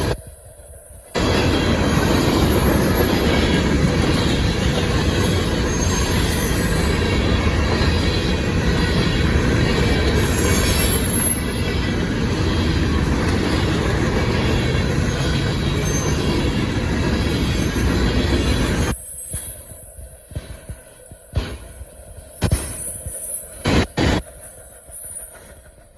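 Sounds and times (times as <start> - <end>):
train wheels rumbling on rail: 0.0 - 25.9
wheel squeals: 1.9 - 12.5, 13.1 - 20.3.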